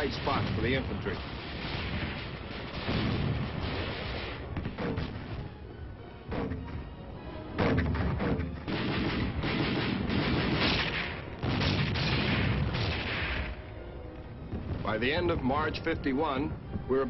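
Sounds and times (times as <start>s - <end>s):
artillery guns firing: 0.0s - 5.6s, 7.5s - 13.7s
background music: 0.0s - 17.0s.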